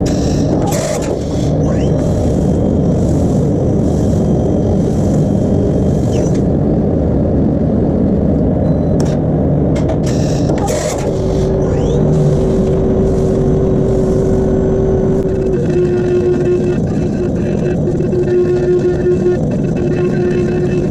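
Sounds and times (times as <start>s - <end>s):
steady tone: 0.0s - 8.0s, 10.3s - 20.9s
milling machine rumble: 0.0s - 20.9s.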